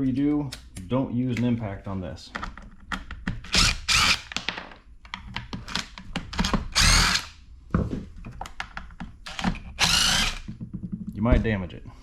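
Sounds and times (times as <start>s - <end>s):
power drill running: 3.5s - 4.3s, 6.8s - 7.3s, 9.3s - 10.5s.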